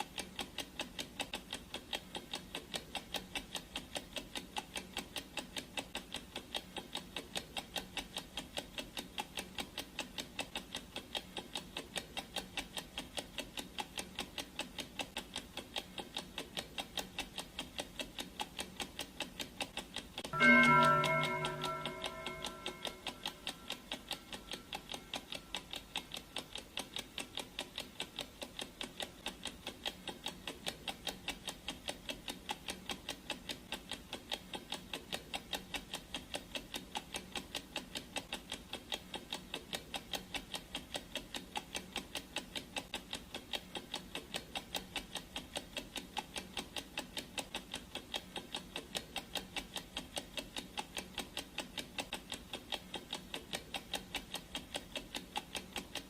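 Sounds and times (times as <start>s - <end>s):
clock ticking: 0.0s - 56.0s
ringing tone: 20.4s - 24.8s.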